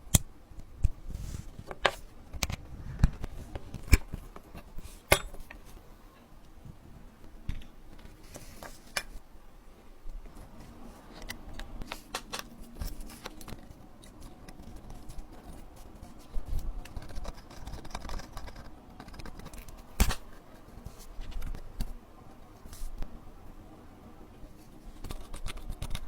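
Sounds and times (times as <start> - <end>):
metal tools clicking and scraping: 5.0 - 5.6.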